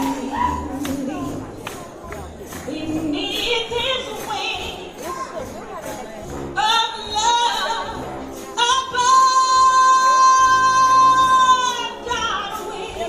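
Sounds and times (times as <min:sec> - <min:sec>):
woman singing gospel song: 0:00.0 - 0:01.8, 0:02.5 - 0:05.0, 0:06.6 - 0:08.0, 0:08.6 - 0:13.0.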